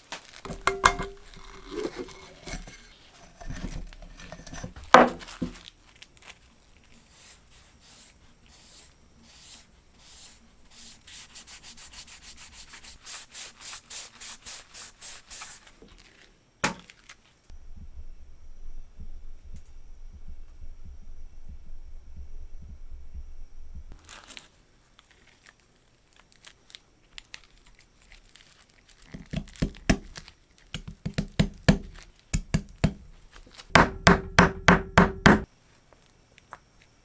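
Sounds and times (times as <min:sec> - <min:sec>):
low steady rumble: 0:17.6 - 0:24.0
sharp hard knocks: 0:30.8 - 0:35.5.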